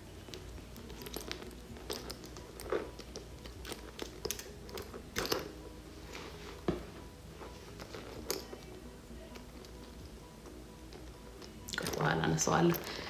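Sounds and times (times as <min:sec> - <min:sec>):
handbag clicks and crinkles: 0:00.3 - 0:05.6, 0:07.7 - 0:08.7.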